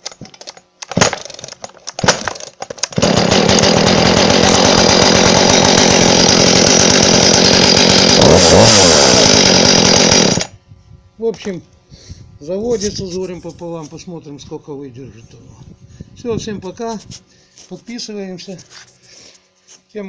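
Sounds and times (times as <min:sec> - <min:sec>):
recoil starter pulls: 0:00.0 - 0:10.5
chainsaw engine running: 0:00.0 - 0:10.6.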